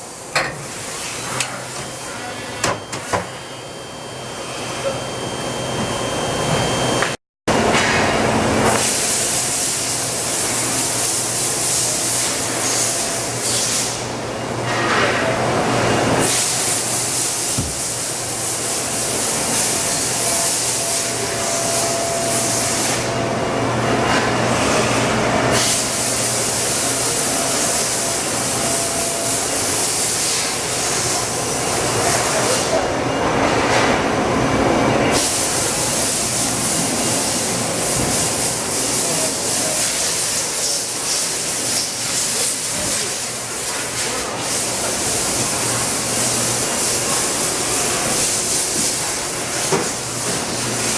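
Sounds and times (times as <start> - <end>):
steady machine hum: 0.0 - 39.8.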